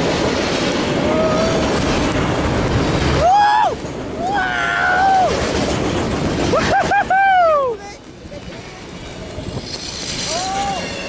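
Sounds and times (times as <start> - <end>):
freight train rushing past: 0.0 - 11.0
wind blasting over microphone: 0.0 - 11.0
people whooping and yelling: 1.0 - 1.8, 3.2 - 5.4, 6.6 - 7.8, 10.2 - 11.0.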